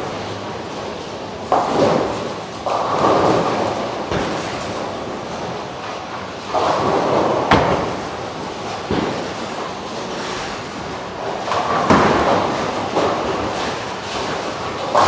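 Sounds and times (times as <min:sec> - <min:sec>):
bowling balls rumbling: 0:00.0 - 0:15.0
bowling pins crashing: 0:06.5 - 0:15.0.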